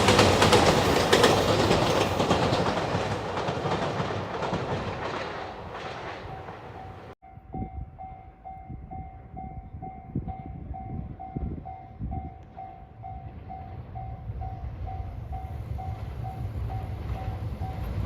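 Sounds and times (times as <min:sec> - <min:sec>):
train wheels clacking on rail joints: 0:00.0 - 0:07.2
train low rumble: 0:00.0 - 0:18.0.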